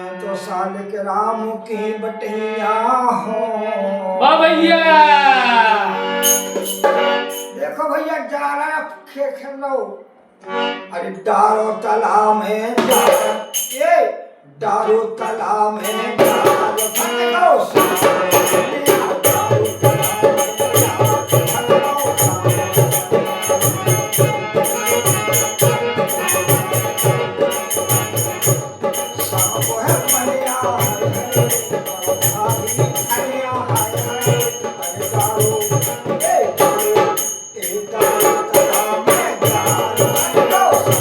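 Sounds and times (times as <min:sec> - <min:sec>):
jingling hand percussion: 0:06.1 - 0:07.8, 0:12.8 - 0:14.1, 0:15.8 - 0:41.0.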